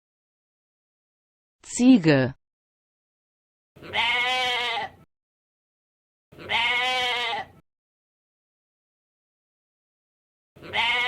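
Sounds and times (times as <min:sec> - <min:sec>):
goat bleating: 0:03.8 - 0:05.1, 0:06.4 - 0:07.6, 0:10.6 - 0:11.0.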